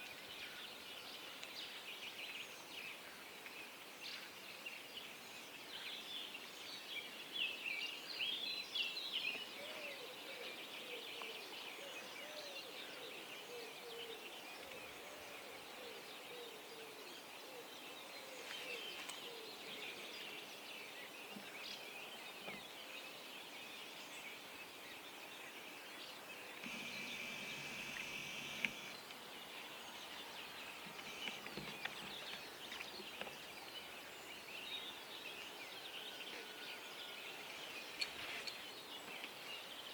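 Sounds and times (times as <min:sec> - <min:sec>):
songbirds chirping and trilling: 0:00.0 - 0:39.9
lower repeated bird calls: 0:26.5 - 0:29.0
steady hum with high whine: 0:26.6 - 0:29.0.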